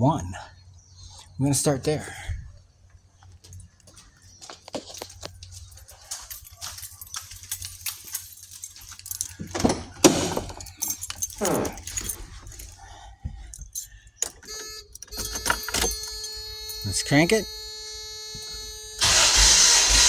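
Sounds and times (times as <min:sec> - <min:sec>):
keys jangling: 0:03.3 - 0:18.7.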